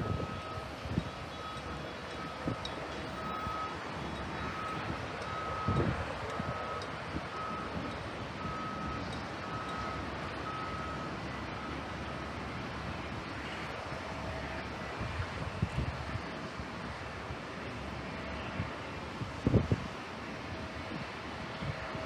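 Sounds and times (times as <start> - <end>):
vehicle reversing alarm beeping: 0.0 - 16.4
outdoor background noise: 0.0 - 22.0.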